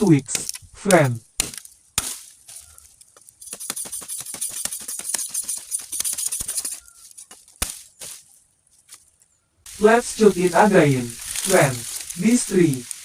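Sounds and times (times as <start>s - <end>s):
dry leaves rustling and crackling: 1.5s - 3.6s, 6.6s - 13.0s.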